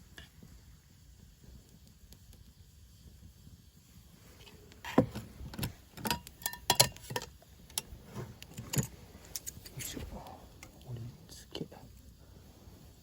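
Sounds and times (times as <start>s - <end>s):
utensils clinking on cookware: 6.0s - 7.8s.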